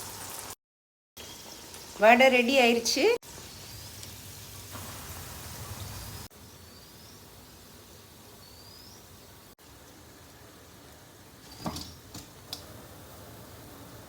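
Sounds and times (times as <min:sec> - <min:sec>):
heavy rain hissing: 0:03.2 - 0:11.5, 0:12.4 - 0:14.0
rising bird chirp: 0:05.6 - 0:09.5.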